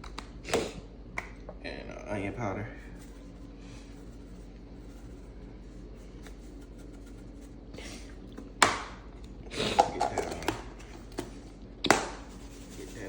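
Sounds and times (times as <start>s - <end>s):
low hum: 0.0s - 9.6s
containers clattering and rattling: 9.6s - 10.6s.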